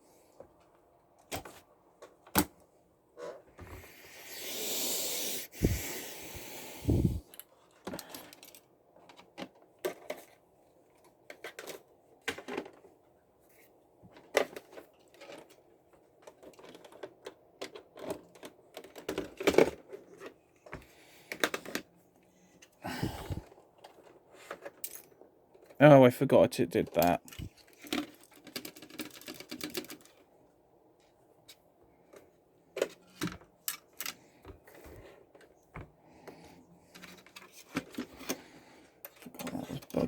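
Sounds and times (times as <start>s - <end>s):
burst of hiss: 3.8s - 7.3s.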